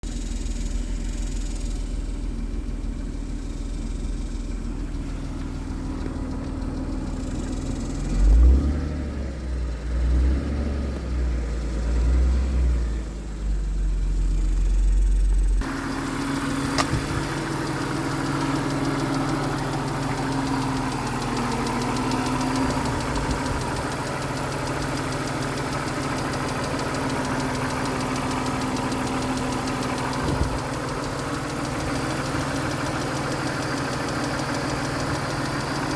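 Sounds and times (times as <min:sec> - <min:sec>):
car engine idling: 0:00.0 - 0:35.9
clicking from engine: 0:00.1 - 0:35.9.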